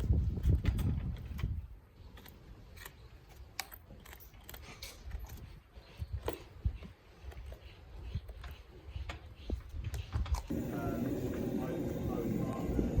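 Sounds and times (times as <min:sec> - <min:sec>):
faint clicks and taps on hoof: 0:00.4 - 0:10.5.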